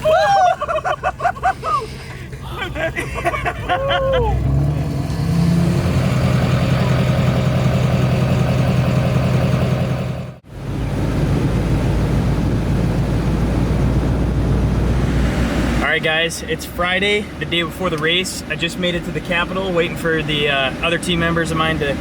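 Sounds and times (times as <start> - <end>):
vehicle engine and road drone: 0.0 - 22.0.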